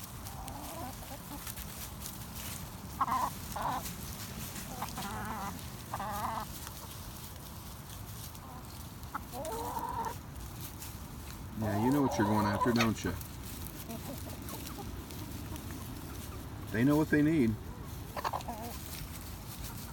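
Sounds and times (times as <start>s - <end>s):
hens clucking and calling: 0.0s - 19.9s.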